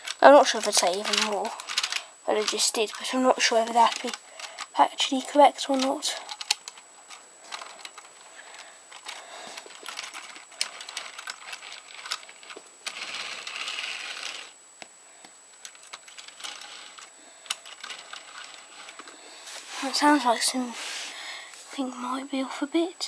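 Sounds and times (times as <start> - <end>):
plastic clicks and rattles: 0.0 - 4.8, 5.6 - 14.5, 15.6 - 19.2.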